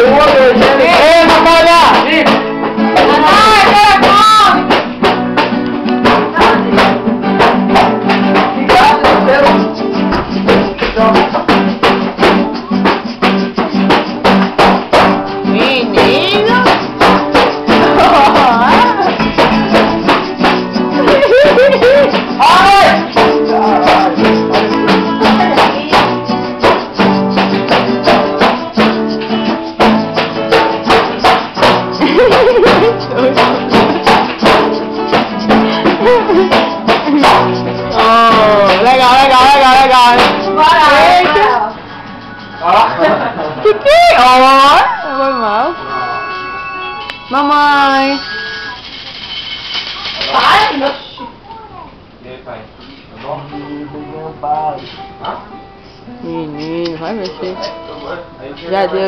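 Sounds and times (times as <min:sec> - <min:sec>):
guitar music with percussion beat: 0:00.0 - 0:52.2, 0:52.8 - 0:59.0
person singing: 0:17.4 - 0:26.9, 0:35.7 - 0:41.9.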